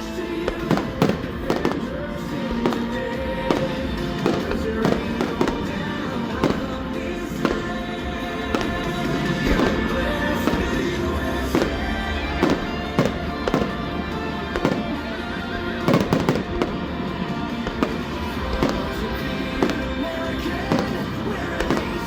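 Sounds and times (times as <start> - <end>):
fireworks bangs: 0.0 - 22.0
music: 0.0 - 22.0.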